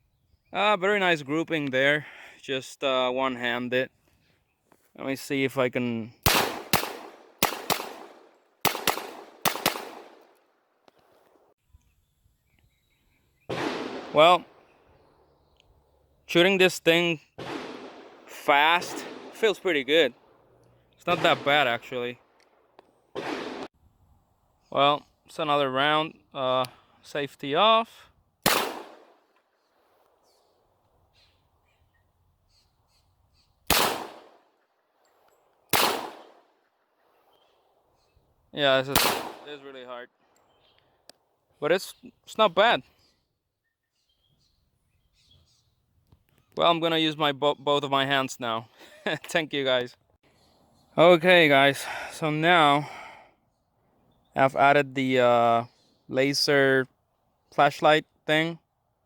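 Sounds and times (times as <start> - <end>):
pistol shots fired fast: 6.2 - 10.3, 13.5 - 14.7, 17.4 - 20.4, 23.1 - 23.7, 28.4 - 29.2, 33.7 - 34.4, 35.7 - 36.4, 38.9 - 39.6.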